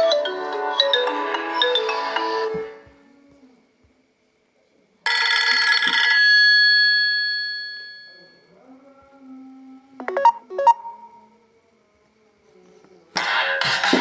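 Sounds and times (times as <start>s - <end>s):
bell-like phone chime: 0.0s - 2.8s.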